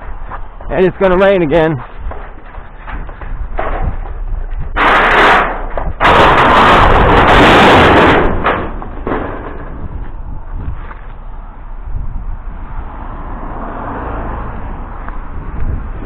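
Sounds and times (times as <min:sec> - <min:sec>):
sheet metal clattering: 0:02.2 - 0:10.0
metal crashing and scraping: 0:02.8 - 0:10.2.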